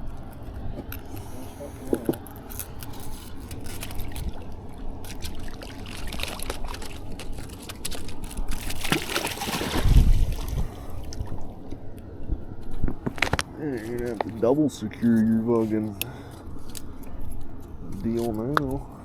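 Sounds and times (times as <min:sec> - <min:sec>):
stream water trickling: 0:02.2 - 0:13.3.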